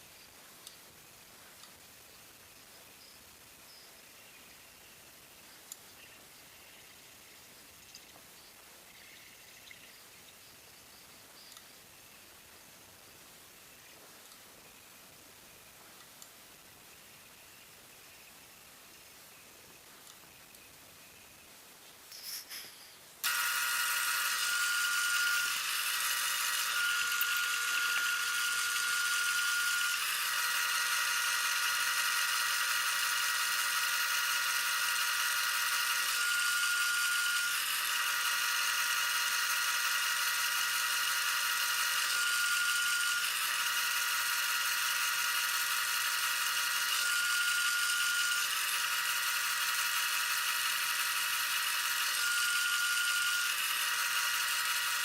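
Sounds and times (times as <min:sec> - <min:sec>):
wood lathe motor whining: 0:23.2 - 0:55.0.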